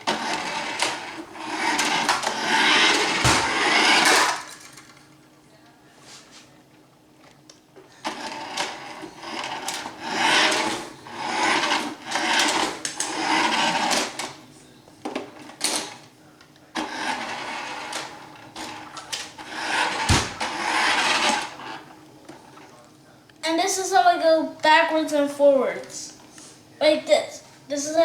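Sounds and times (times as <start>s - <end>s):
toy truck motor whirring: 0.1s - 4.6s, 8.1s - 14.3s, 16.8s - 21.8s.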